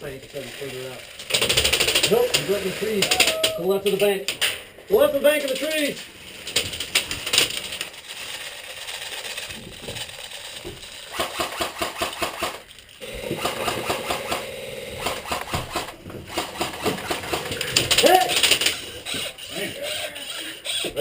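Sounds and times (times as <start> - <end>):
airsoft guns firing full-auto bursts: 1.2 - 3.3, 11.1 - 19.9
steady whine: 13.0 - 17.3.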